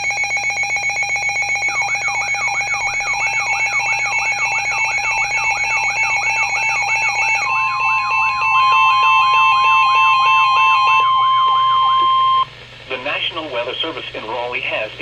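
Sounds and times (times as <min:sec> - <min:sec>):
loud single-pitch alarm tone: 0:00.0 - 0:12.5
steady tones: 0:00.0 - 0:13.2
rising whoop alert tone: 0:01.5 - 0:12.5.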